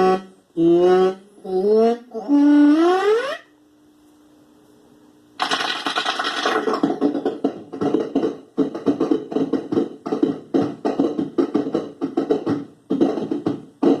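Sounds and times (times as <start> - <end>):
toy buzzy sound bursts: 0.0 - 3.5, 5.4 - 6.8.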